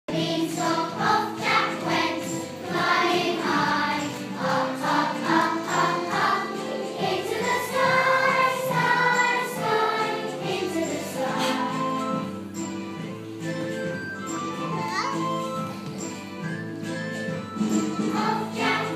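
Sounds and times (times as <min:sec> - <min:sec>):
children's choir singing: 0:00.1 - 0:12.5, 0:17.6 - 0:18.9.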